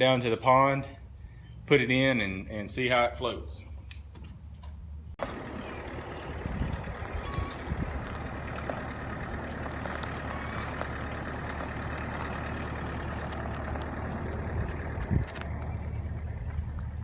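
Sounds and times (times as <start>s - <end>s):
engine humming: 3.9s - 17.0s.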